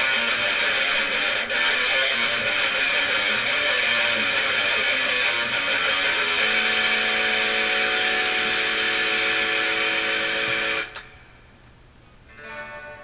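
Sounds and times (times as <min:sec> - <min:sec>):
electric guitar chord ringing: 0:00.0 - 0:11.5, 0:12.2 - 0:13.0
click: 0:10.5 - 0:11.8.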